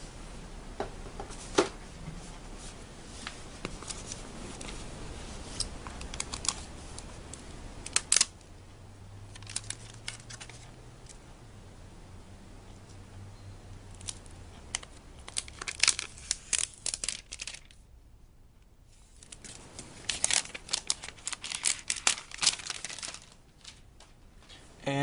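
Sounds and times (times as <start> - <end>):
plastic packaging crinkling: 3.7 - 8.3, 9.3 - 11.2, 13.9 - 17.8, 19.1 - 24.2
packaging crackle: 5.5 - 8.3, 9.3 - 11.2, 13.9 - 17.8, 19.1 - 24.1.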